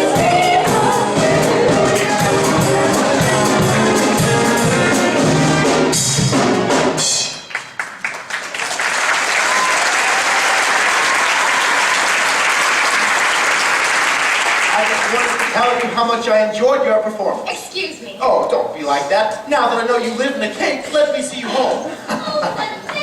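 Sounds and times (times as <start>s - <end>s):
show tune with brass and drums: 0.0s - 7.9s
audience applause: 7.5s - 15.9s.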